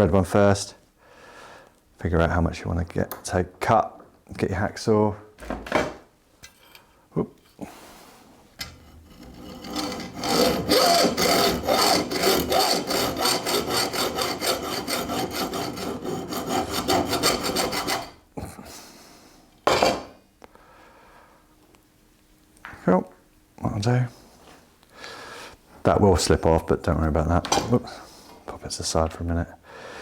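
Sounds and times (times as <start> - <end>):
hacksaw cutting: 8.6 - 18.2, 19.7 - 20.1.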